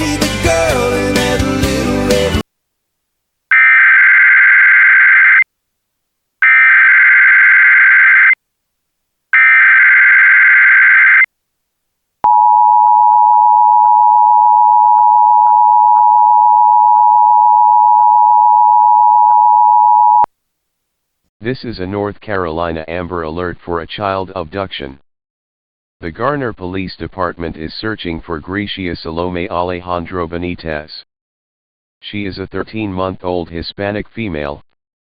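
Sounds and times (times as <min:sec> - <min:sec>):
two-tone attention signal: 0:12.3 - 0:20.3.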